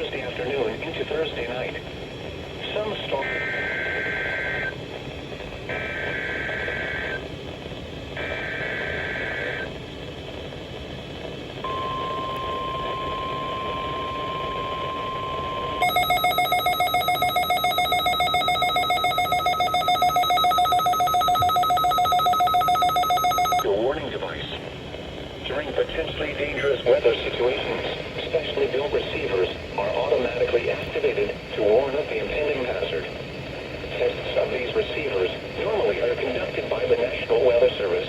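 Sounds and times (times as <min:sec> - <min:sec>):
steady warning alarm tone: 0:11.6 - 0:23.7
fast-pulsing electronic alert beep: 0:11.7 - 0:23.6
two-tone data screeches: 0:11.7 - 0:23.6.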